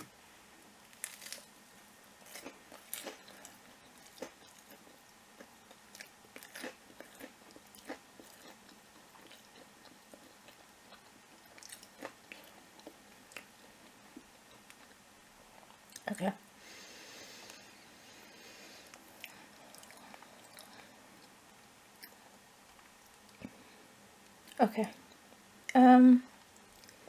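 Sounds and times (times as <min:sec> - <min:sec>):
chewing crispy batter: 0:00.9 - 0:16.1, 0:18.8 - 0:21.4.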